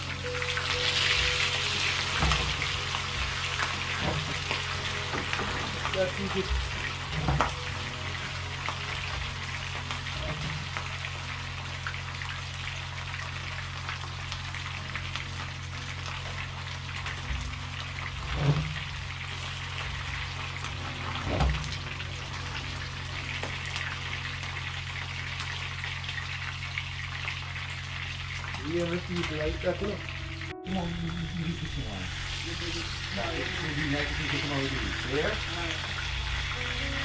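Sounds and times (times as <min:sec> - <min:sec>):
fish sizzling in hot oil: 0:00.0 - 0:37.0.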